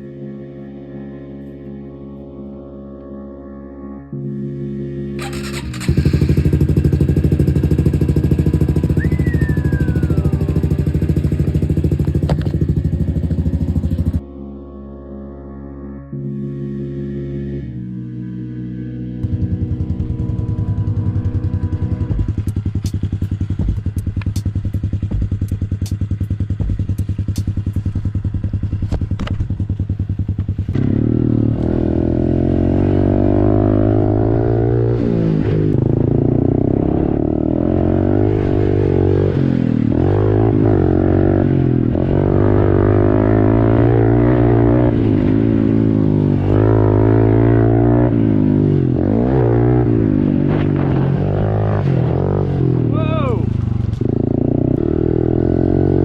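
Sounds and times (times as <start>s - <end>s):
motorbike engine revving: 5.2s - 14.2s, 19.2s - 56.0s
sharp clicks: 22.4s - 24.8s, 25.4s - 27.8s.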